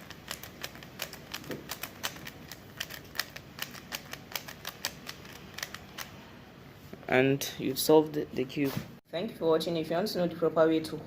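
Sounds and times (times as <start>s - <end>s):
puzzle cube plastic layers clicking: 0.0s - 6.2s.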